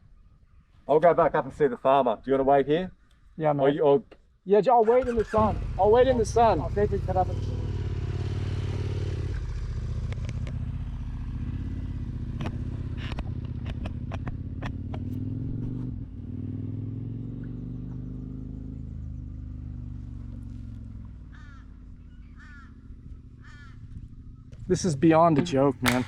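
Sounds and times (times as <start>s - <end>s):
motorcycle engine pulling away: 5.0s - 26.0s
crows calling: 21.2s - 24.2s.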